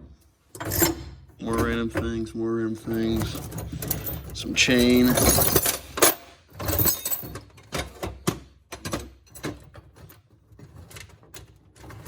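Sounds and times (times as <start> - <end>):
metal chain clinking: 2.8 - 8.0.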